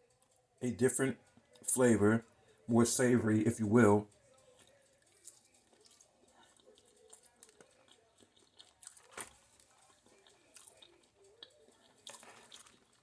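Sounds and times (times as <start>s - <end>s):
chewing with mouth clicks: 1.2s - 1.7s, 4.1s - 13.0s.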